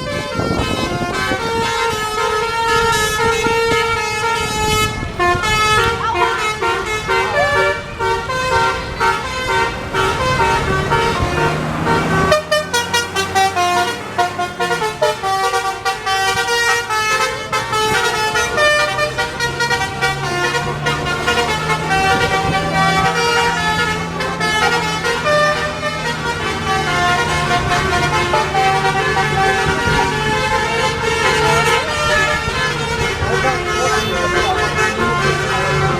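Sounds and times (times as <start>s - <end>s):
bus air horn playing a melody: 0.0s - 35.9s
bus engine running: 0.0s - 35.9s.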